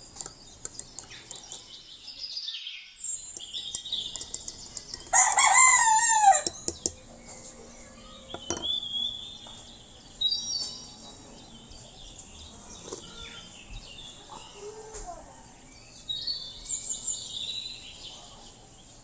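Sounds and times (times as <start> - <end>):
small birds chirping: 0.0 - 19.0
rooster crowing: 5.1 - 6.6.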